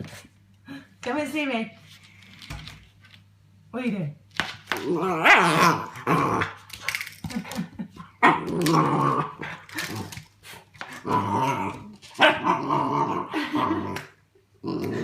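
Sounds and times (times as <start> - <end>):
puppy growling and yapping: 4.8 - 6.7, 8.2 - 10.3, 10.9 - 15.0.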